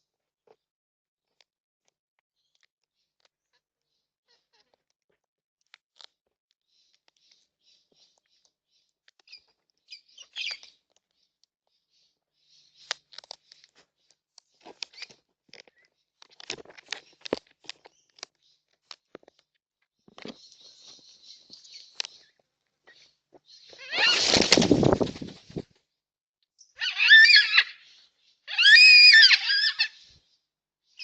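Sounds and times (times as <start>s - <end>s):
birds pecking and cracking seed: 1.3s - 25.6s.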